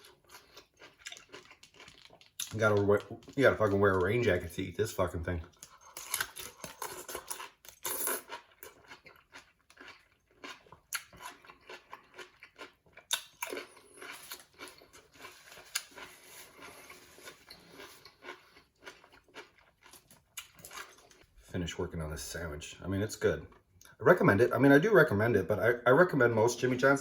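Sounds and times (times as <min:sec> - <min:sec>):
person chewing sandwich: 0:00.0 - 0:03.4, 0:05.5 - 0:21.3.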